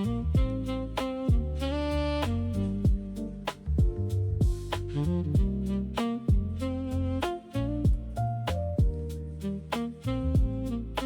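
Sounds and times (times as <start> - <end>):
instrumental music with beat: 0.0 - 11.0
kick drum: 0.4 - 0.6, 2.9 - 3.1, 3.8 - 4.7, 5.4 - 5.6, 6.3 - 6.5, 7.9 - 8.1, 10.4 - 10.6.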